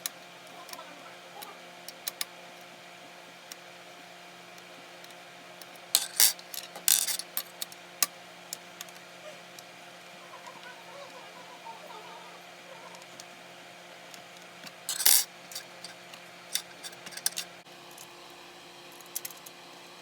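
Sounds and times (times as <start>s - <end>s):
steady low hum: 0.0s - 20.0s
light clicks of handled parts: 14.1s - 18.1s, 18.9s - 19.6s.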